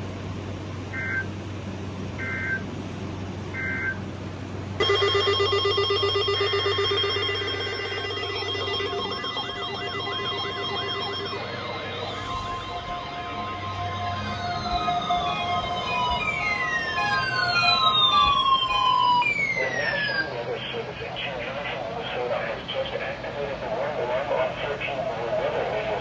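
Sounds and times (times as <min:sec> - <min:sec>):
steady multi-tone alarm with buzz: 0:00.9 - 0:01.3, 0:02.2 - 0:02.6, 0:03.6 - 0:04.0, 0:04.8 - 0:20.3
rising warble electronic siren: 0:03.6 - 0:04.0, 0:04.8 - 0:20.5
short beeps: 0:03.6 - 0:04.0, 0:04.8 - 0:20.3.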